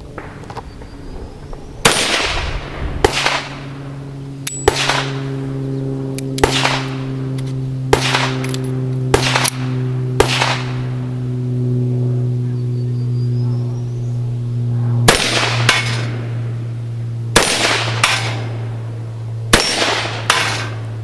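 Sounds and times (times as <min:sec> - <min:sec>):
steady low hum: 0:00.0 - 0:21.0
pistol shots: 0:01.8 - 0:03.6, 0:04.5 - 0:05.2, 0:06.4 - 0:07.1, 0:07.9 - 0:10.8, 0:15.1 - 0:16.2, 0:17.4 - 0:18.5, 0:19.5 - 0:20.8.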